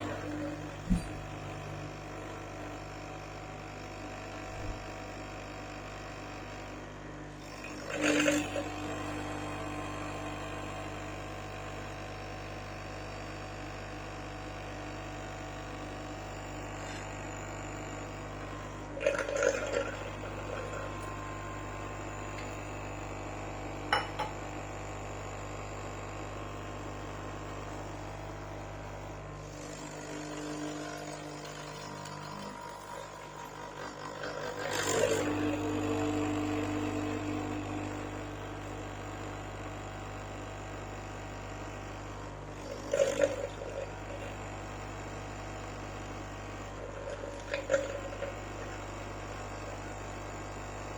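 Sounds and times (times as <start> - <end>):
coffee machine pump humming: 0.0 - 50.9
coffee machine spluttering: 7.7 - 9.2, 19.0 - 22.6, 29.6 - 35.8, 42.6 - 44.5, 46.7 - 49.2.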